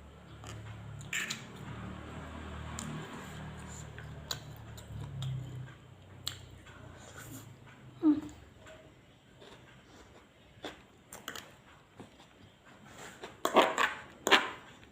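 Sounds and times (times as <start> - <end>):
chewing and mouth sounds: 2.6 - 6.7, 9.4 - 14.9.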